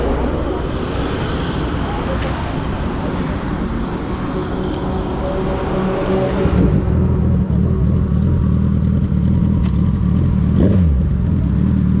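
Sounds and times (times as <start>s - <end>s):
voices: 0.0s - 6.6s
street traffic noise: 0.0s - 12.0s
motorcycle engine running: 6.5s - 12.0s.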